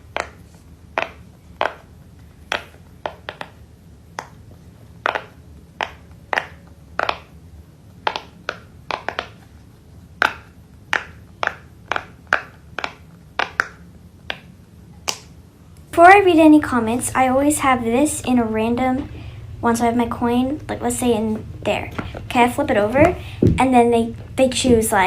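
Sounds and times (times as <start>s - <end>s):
fidget toy popping: 0.0s - 15.4s.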